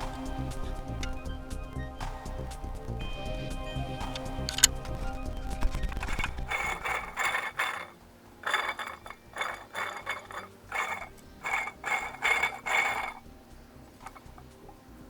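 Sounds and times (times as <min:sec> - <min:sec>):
small metal mechanism strokes: 0:05.6 - 0:13.3.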